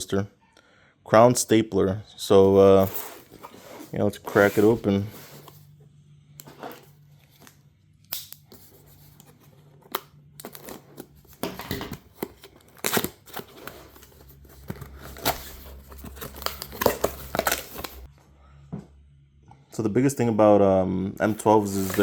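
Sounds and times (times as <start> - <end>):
packaging crinkling and rustling: 8.5 - 18.1, 21.6 - 22.0
cardboard tearing: 10.4 - 18.1.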